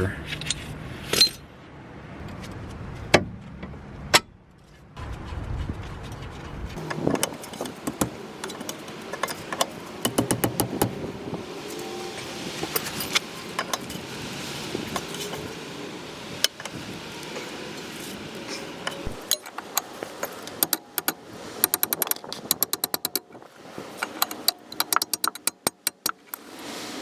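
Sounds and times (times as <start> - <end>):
rapid ratchet clicks: 6.8 - 11.0, 18.9 - 26.6
knocks: 6.8 - 11.1
metal tools clinking: 6.8 - 11.1, 12.6 - 14.1, 18.0 - 26.6.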